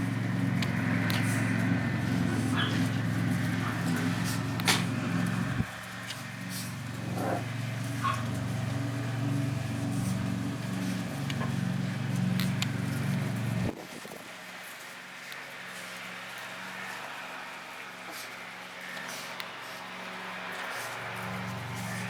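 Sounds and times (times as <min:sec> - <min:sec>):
low engine hum: 0:00.0 - 0:14.6, 0:15.8 - 0:22.0.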